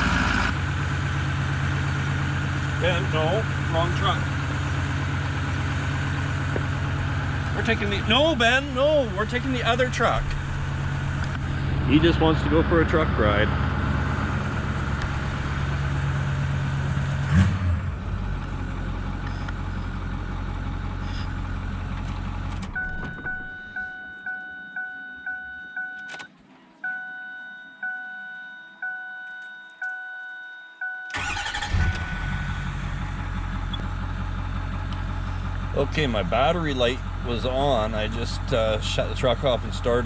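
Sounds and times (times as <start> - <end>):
diesel engine idling: 0.0 - 25.8, 31.1 - 40.0
dashboard warning chime dinging: 22.7 - 32.2.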